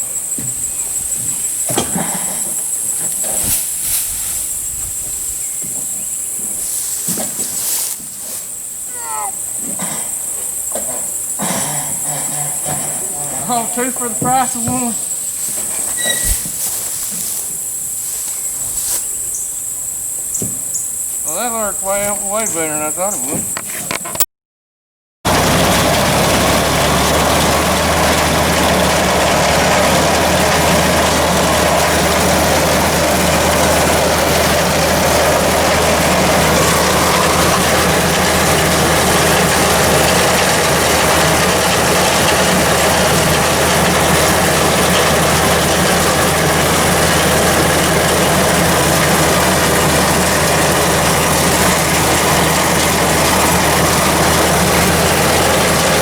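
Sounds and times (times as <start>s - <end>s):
tractor diesel engine running: 0.0s - 24.2s, 25.3s - 56.0s
machinery clatter: 10.5s - 17.5s, 25.3s - 56.0s.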